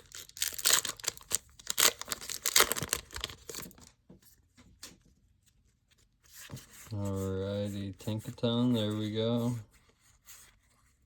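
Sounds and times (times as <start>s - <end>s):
plastic packaging tearing and crinkling: 0.0s - 3.9s.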